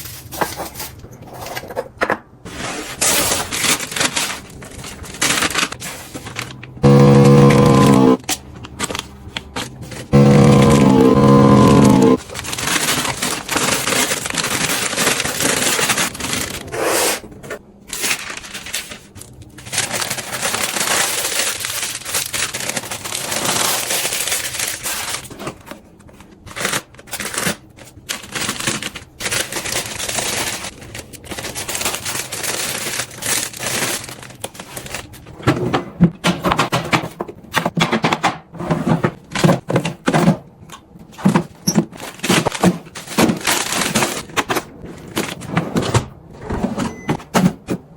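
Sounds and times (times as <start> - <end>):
plastic crinkling and rustling: 0.0 - 1.8, 2.5 - 6.8, 7.7 - 10.7, 12.2 - 16.8, 17.5 - 35.6, 41.1 - 45.9.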